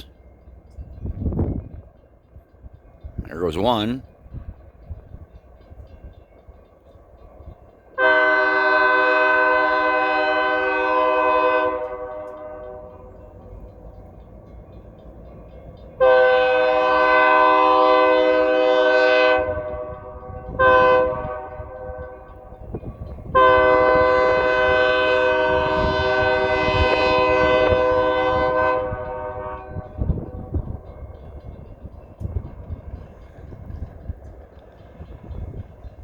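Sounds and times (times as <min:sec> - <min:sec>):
passing train rumble and clicking: 0:00.0 - 0:36.0
locomotive air horn blasts: 0:08.0 - 0:12.9, 0:16.0 - 0:21.9, 0:23.3 - 0:30.1.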